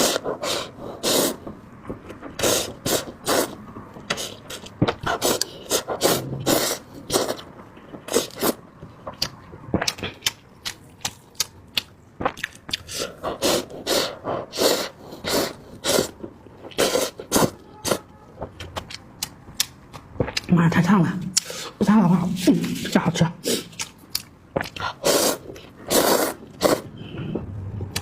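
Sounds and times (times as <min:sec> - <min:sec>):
person slurping noodles: 0:00.0 - 0:01.4, 0:02.4 - 0:07.5, 0:08.1 - 0:08.6, 0:12.9 - 0:18.0, 0:24.7 - 0:27.5.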